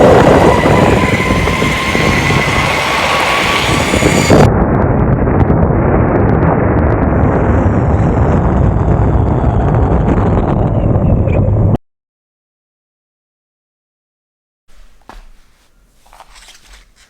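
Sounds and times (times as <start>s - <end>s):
faint high whine: 0.0s - 4.5s
skateboard road rumble: 0.0s - 11.8s
wind on microphone: 0.0s - 11.8s.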